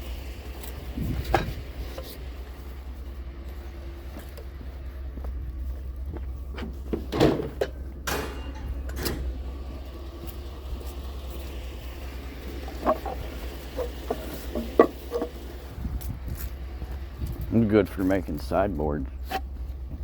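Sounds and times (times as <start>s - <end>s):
vehicle engine droning: 0.0s - 20.0s
clunks and knocks: 1.1s - 2.2s, 6.1s - 10.4s, 12.4s - 15.6s.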